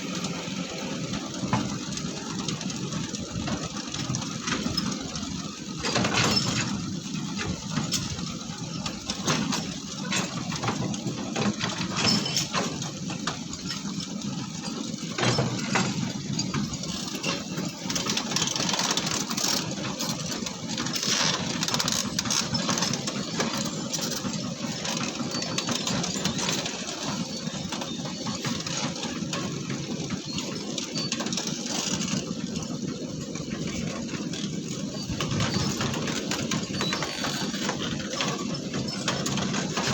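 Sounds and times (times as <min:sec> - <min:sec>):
excavator diesel engine running: 0:00.0 - 0:39.9
knocks and clatter: 0:00.1 - 0:39.9.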